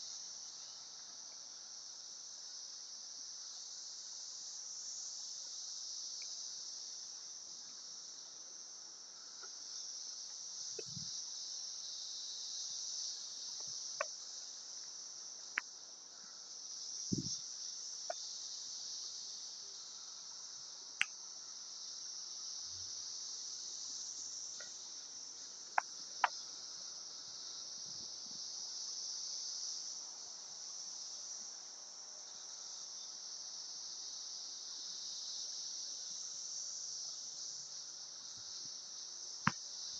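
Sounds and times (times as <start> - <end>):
cicadas droning: 0.0 - 39.9.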